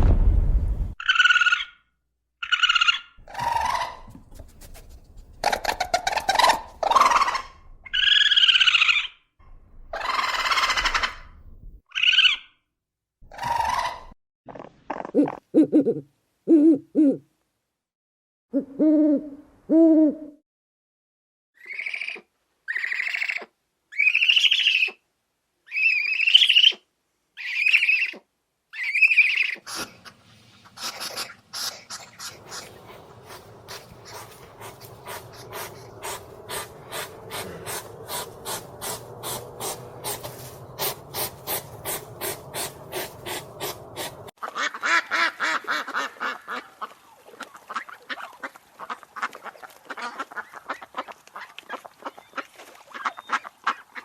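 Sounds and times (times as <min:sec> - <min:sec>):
animal calling: 0:30.7 - 0:44.3.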